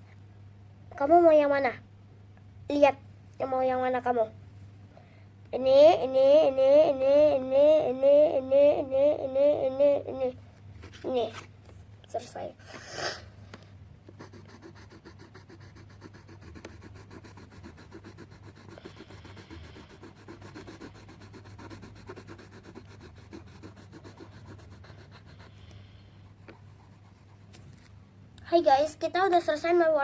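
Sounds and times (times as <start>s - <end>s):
pencil scribbling on paper: 14.1s - 25.6s, 26.2s - 27.6s.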